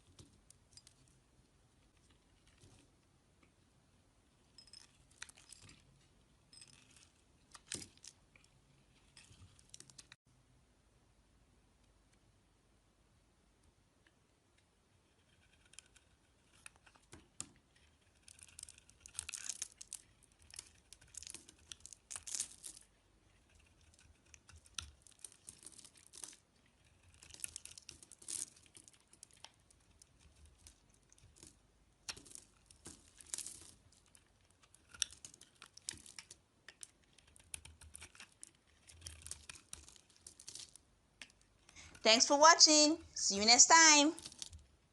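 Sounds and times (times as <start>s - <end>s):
knife scraping soap: 4.6s - 10.2s, 15.0s - 31.4s, 32.4s - 40.4s.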